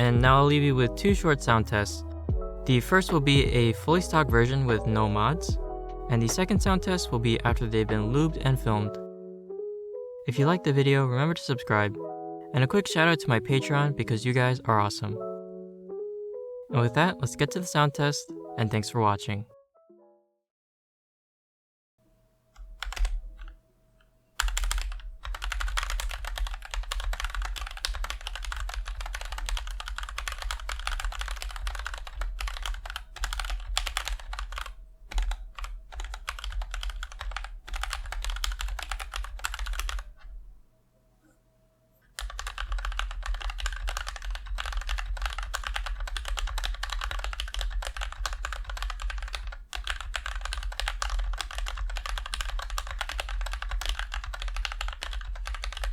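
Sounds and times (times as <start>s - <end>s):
mechanical keyboard typing: 22.6s - 23.6s, 24.4s - 40.4s, 42.2s - 55.9s.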